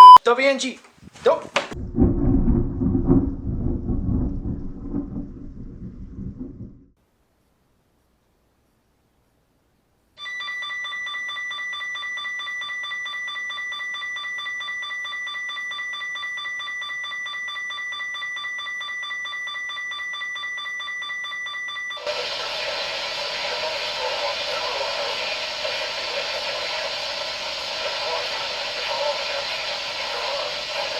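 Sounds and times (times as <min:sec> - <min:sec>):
loud hissy noise: 0:22.0 - 0:30.9.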